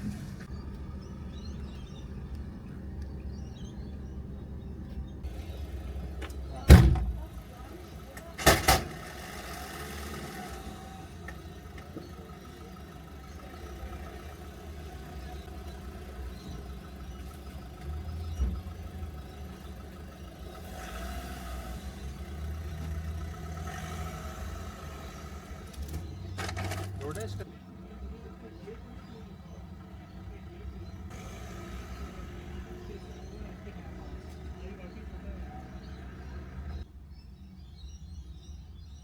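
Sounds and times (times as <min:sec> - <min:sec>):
vehicle engine rumbling: 0:00.0 - 0:39.0
short thump: 0:06.2 - 0:07.3.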